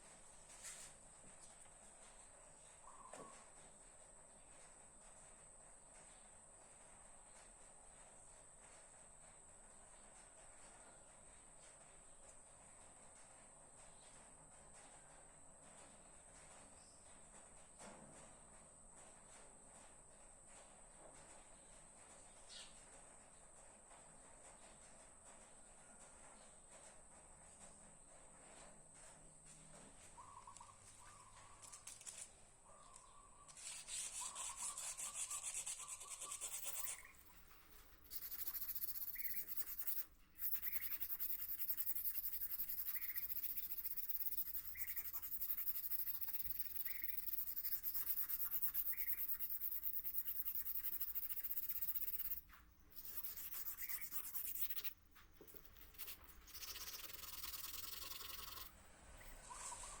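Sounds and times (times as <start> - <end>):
sandpaper rubbing on steel blade: 33.6 - 58.7.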